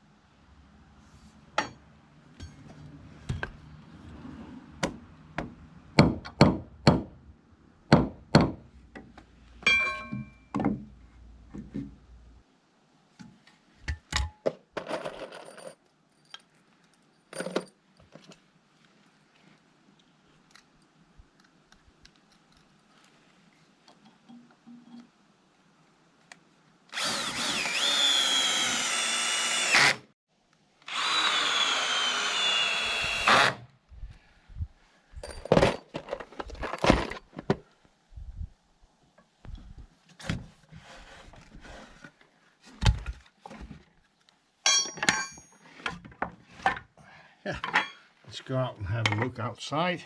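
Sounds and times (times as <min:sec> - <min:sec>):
ringing metallic clink: 0:09.7 - 0:10.5, 0:44.7 - 0:45.6.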